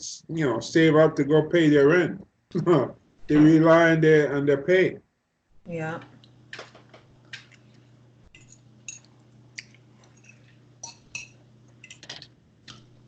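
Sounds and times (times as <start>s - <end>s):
steady low hum: 0.0s - 13.0s
chewing: 7.2s - 13.0s
utensils clinking on dishes: 10.1s - 12.3s.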